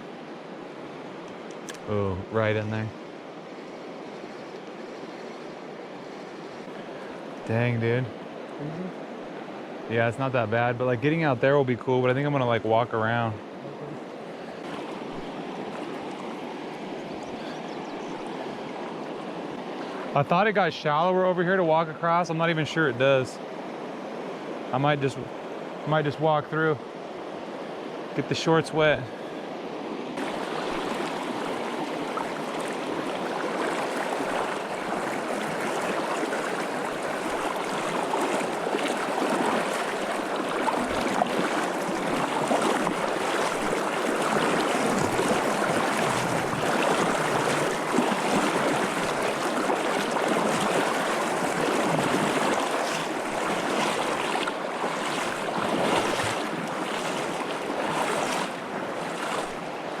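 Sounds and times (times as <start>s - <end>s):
river rushing over rocks: 30.2s - 59.6s.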